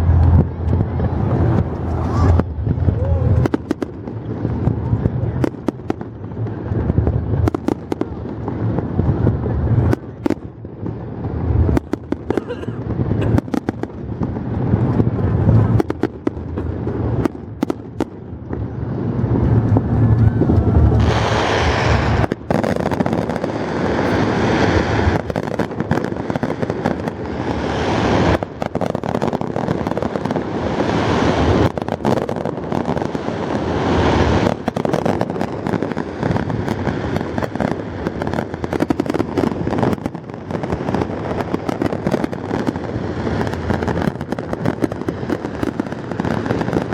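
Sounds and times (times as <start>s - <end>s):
deep booms: 0.0s - 5.2s, 18.6s - 22.6s
fireworks bangs: 0.0s - 46.9s
fireworks crackling: 0.0s - 46.9s.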